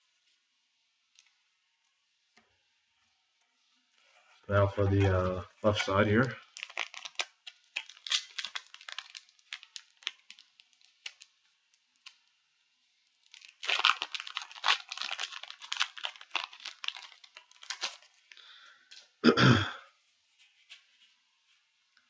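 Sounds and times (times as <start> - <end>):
foil wrapper crinkling and tearing: 4.6 - 12.4, 13.0 - 19.2.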